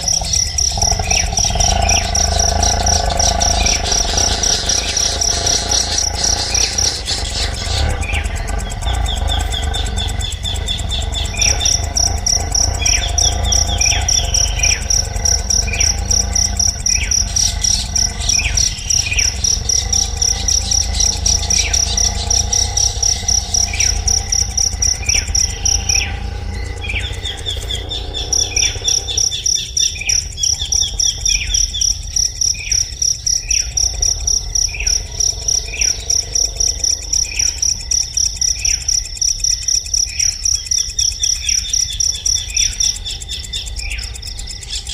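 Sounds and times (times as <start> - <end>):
insect trill: 0.0 - 44.9
low steady hum: 0.0 - 44.9.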